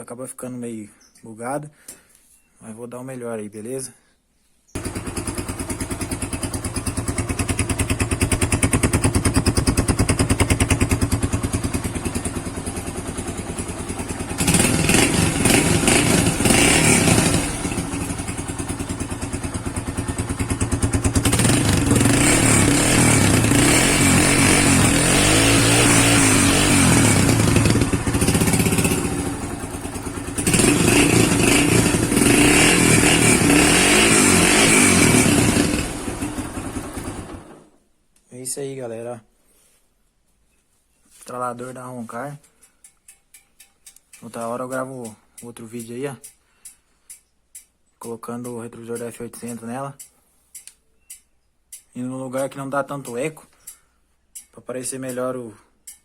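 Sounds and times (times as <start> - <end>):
motorcycle engine revving: 4.8 - 37.7.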